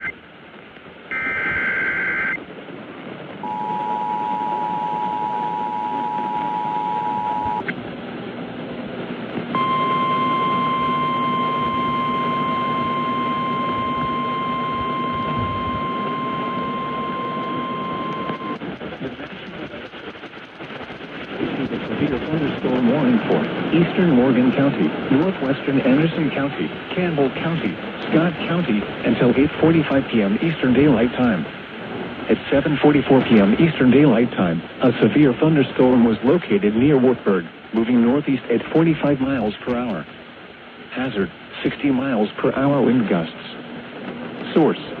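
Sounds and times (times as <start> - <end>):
radio static hiss: 0.0 - 2.7, 3.4 - 7.8, 9.3 - 45.0
single-pitch alarm tone: 1.1 - 2.4, 3.4 - 7.7, 9.6 - 18.6
two-tone attention signal: 1.1 - 2.4, 3.4 - 7.7, 9.6 - 18.6
warbling data burst: 1.1 - 2.4.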